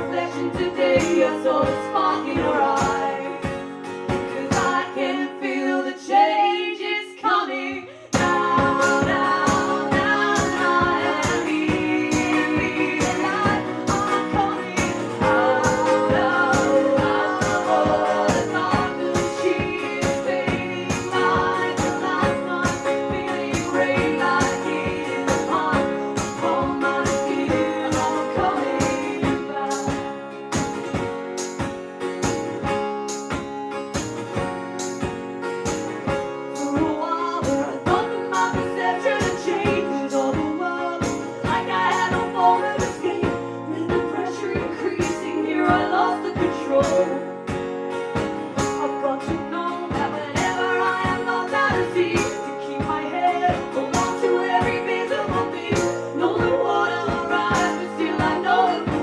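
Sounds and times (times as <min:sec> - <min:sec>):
woman singing: 0:00.0 - 0:31.0, 0:36.5 - 0:47.7, 0:48.4 - 0:59.0
live band playing: 0:08.2 - 0:59.0.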